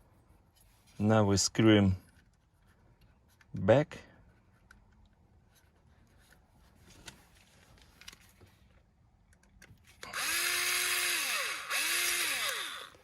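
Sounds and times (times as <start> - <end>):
power screwdriver motor spinning: 10.0 - 13.0.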